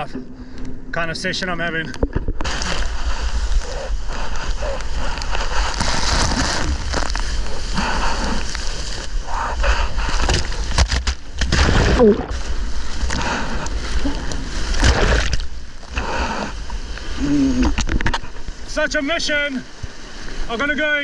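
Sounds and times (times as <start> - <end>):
crackle of spray: 2.4 - 9.2
water rushing and splashing: 2.4 - 21.0.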